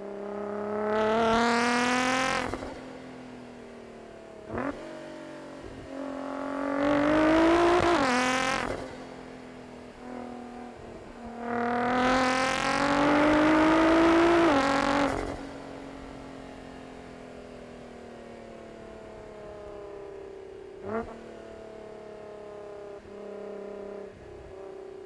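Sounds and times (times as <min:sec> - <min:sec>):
car engine accelerating hard: 0:04.5 - 0:09.0, 0:11.5 - 0:16.2.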